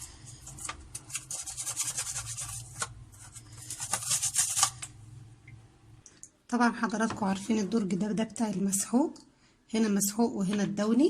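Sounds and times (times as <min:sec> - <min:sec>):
toothbrush scrubbing plastic drawer: 0:00.0 - 0:04.9.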